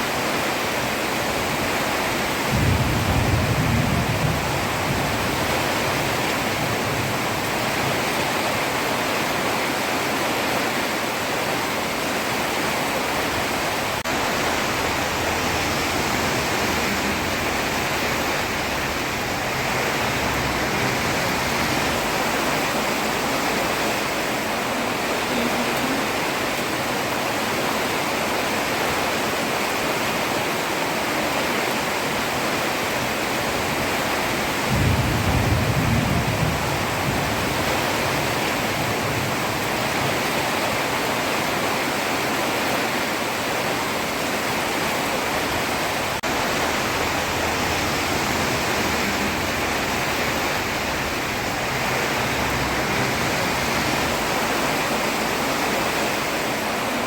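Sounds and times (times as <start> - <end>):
heavy rain on a road: 0.0 - 57.0
low rumble: 14.0 - 26.6.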